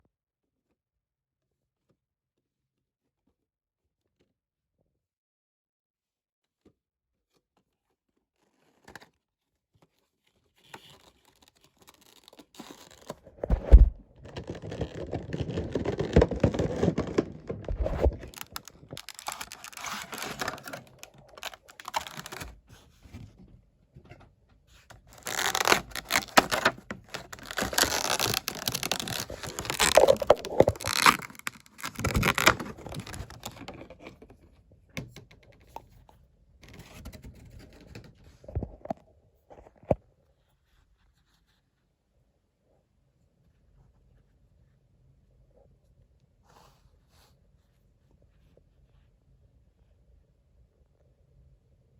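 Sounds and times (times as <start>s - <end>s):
cardboard and plastic packaging crinkling: 10.6s - 23.0s, 24.9s - 34.3s.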